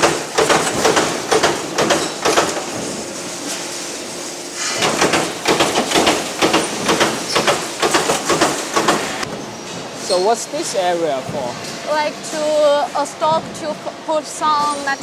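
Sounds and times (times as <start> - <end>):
stamping machinery clanking: 0.0 - 3.1, 4.6 - 9.9.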